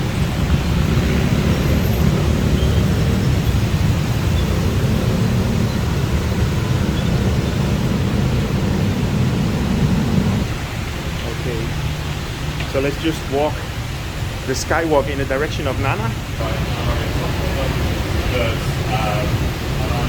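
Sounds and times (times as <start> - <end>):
city traffic rumble: 0.0 - 20.0
heavy rain: 0.0 - 20.0.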